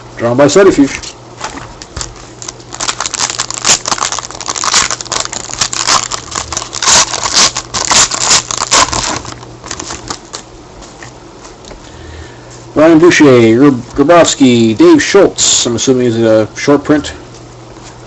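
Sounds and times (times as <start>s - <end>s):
foil wrapper crinkling: 1.4s - 10.5s.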